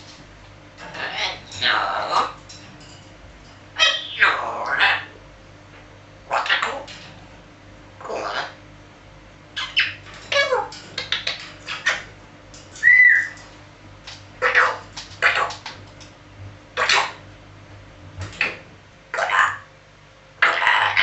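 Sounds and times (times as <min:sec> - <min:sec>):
parrot making noisy sounds: 0:00.8 - 0:02.4, 0:03.8 - 0:05.2, 0:06.2 - 0:07.0, 0:08.0 - 0:08.6, 0:09.6 - 0:13.4, 0:14.4 - 0:15.8, 0:16.8 - 0:17.2, 0:19.1 - 0:19.7, 0:20.4 - 0:21.0
parrot whistle: 0:12.8 - 0:13.4.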